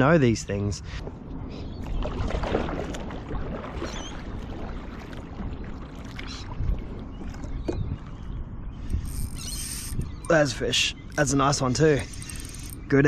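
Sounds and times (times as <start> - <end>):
water splashing around a kayak: 1.1 - 8.6.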